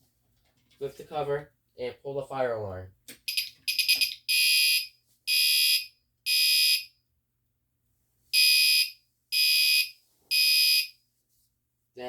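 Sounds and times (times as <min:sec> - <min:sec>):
fire alarm horn blasts: 0:03.3 - 0:06.9, 0:08.4 - 0:10.9.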